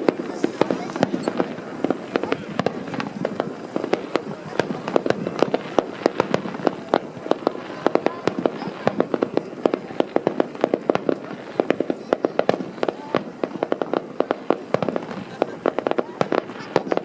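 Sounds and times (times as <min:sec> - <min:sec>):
fireworks bangs and crackling pops: 0:00.0 - 0:17.0.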